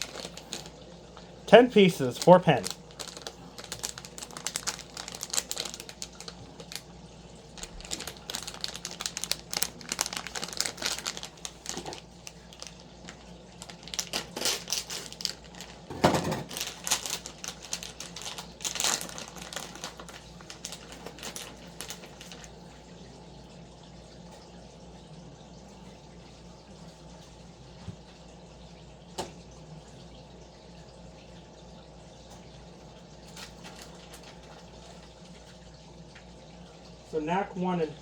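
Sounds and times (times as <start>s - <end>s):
small parts clicking and rattling: 0.0s - 0.7s, 2.6s - 6.8s, 7.7s - 12.7s, 13.6s - 15.8s, 16.4s - 22.5s
plastic packaging crinkling: 0.0s - 0.8s, 1.5s - 6.9s, 7.5s - 22.6s, 33.3s - 35.1s.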